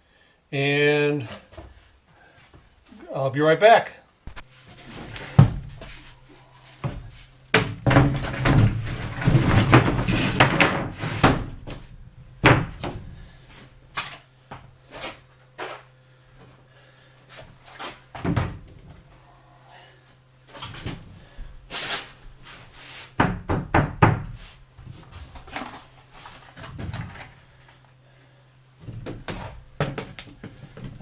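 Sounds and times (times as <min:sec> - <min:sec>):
faint low hum: 0:00.0 - 0:22.8
thuds and clatter of handling: 0:04.3 - 0:06.1, 0:06.8 - 0:13.0, 0:17.4 - 0:19.0, 0:28.8 - 0:31.0.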